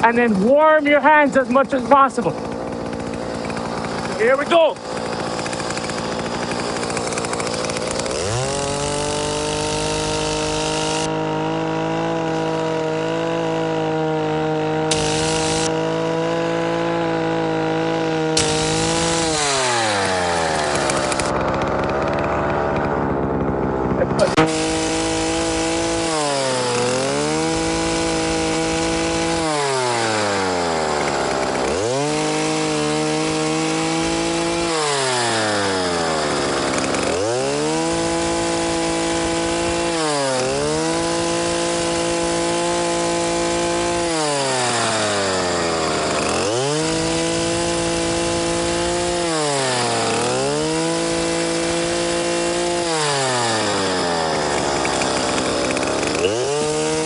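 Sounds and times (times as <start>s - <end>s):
chainsaw revving: 0.0s - 57.0s.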